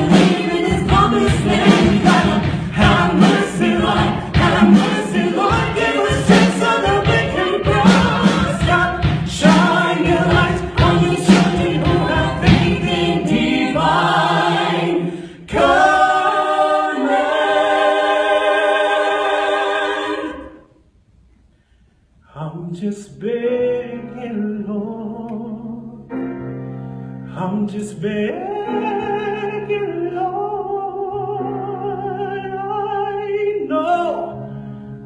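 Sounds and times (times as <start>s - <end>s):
rhythmic accompaniment: 0.0s - 20.6s
choir singing: 0.0s - 20.8s.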